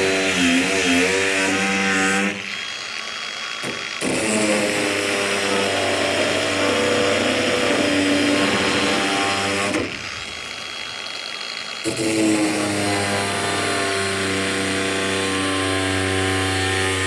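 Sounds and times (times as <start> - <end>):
cutting wheel cutting steel wire: 0.0 - 17.0.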